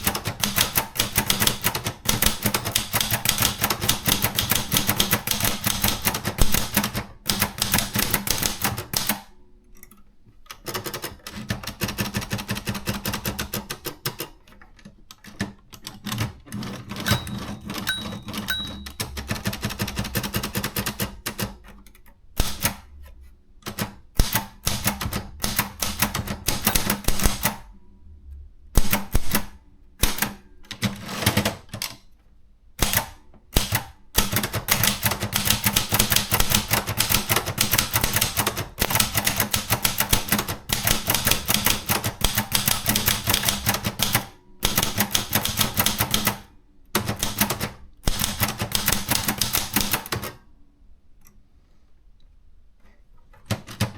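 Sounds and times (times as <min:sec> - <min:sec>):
manual typewriter typing: 0:00.0 - 0:09.3, 0:10.5 - 0:27.7, 0:28.8 - 0:32.1, 0:32.8 - 0:50.4, 0:53.4 - 0:53.9.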